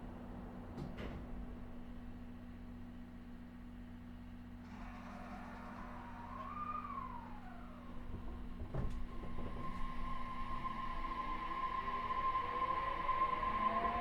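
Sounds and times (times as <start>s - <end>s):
electric train motor whining: 4.6s - 14.0s.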